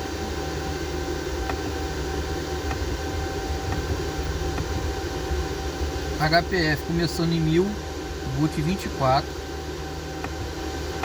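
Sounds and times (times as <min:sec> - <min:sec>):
constant mid-pitched tone: 0:00.0 - 0:11.0
mechanical hum and hiss: 0:00.0 - 0:11.0.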